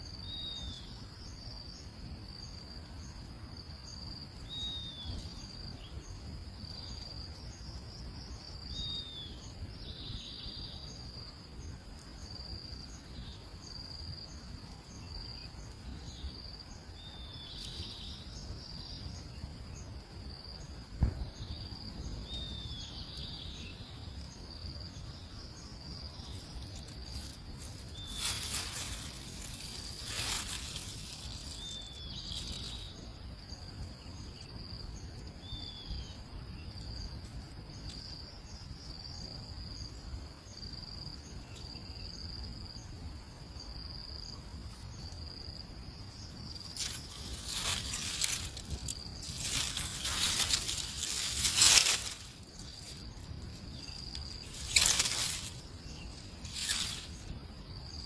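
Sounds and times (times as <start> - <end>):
insects chirping: 0.0 - 58.0
loud thump: 21.0 - 21.5.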